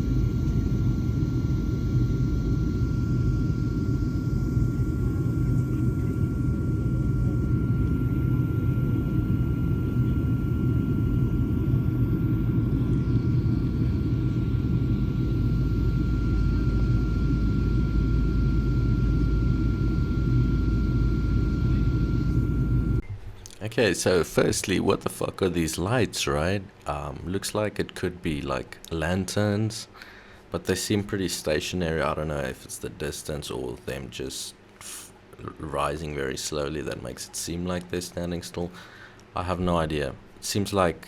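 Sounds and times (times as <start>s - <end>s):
helicopter rumble: 0.0s - 23.0s
high whine: 0.0s - 25.2s.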